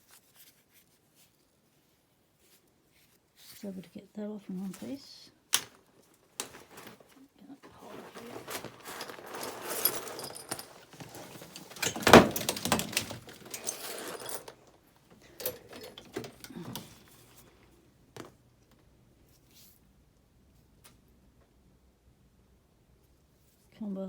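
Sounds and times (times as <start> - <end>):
clicks and knocks: 7.7 - 14.6
metal bike locks jangling: 8.8 - 14.6, 15.3 - 16.8.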